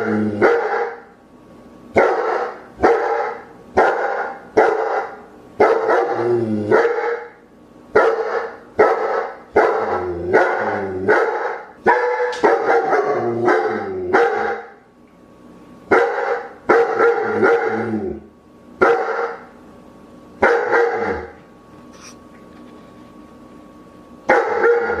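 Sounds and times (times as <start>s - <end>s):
dog barking: 0.4s - 1.1s, 2.0s - 7.4s, 8.0s - 14.8s, 15.9s - 17.8s, 18.8s - 19.5s, 20.4s - 21.3s, 24.3s - 25.0s.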